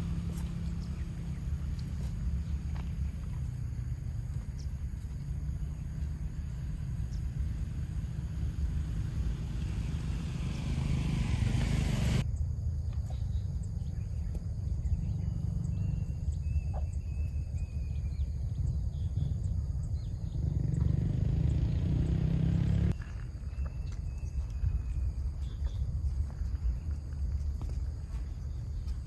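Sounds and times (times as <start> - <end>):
low rumble: 0.0 - 12.6.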